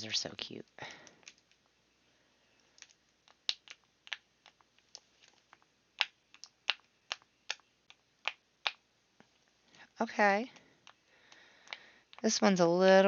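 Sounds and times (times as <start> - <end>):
silicone fidget toy popping: 10.5 - 12.4.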